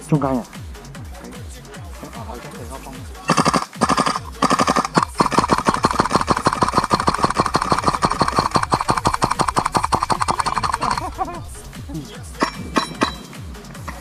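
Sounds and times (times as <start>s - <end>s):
airsoft rifle automatic fire: 3.3s - 11.8s.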